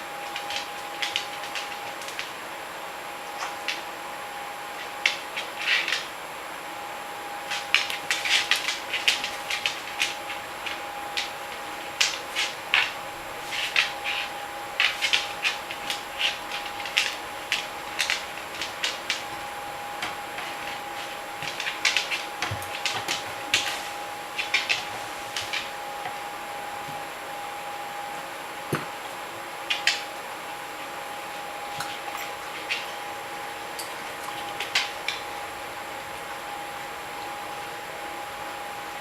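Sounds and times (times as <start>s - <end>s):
faint steady hum: 0.0s - 39.0s
dog crunching food: 7.5s - 27.0s.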